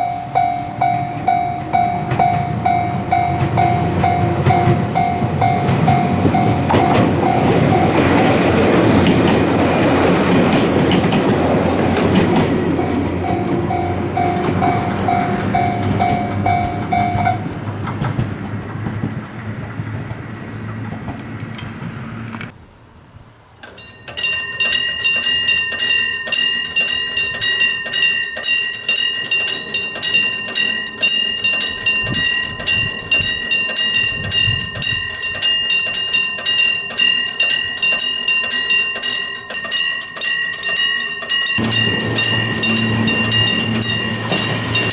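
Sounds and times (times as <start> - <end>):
crossing alarm pulsing beep: 0.0 - 8.3, 12.8 - 17.4, 23.7 - 44.9
electric crossing bell ringing: 0.0 - 10.4, 11.0 - 18.9, 23.6 - 44.9
train wheels clattering on rails: 0.0 - 22.5, 23.6 - 44.9.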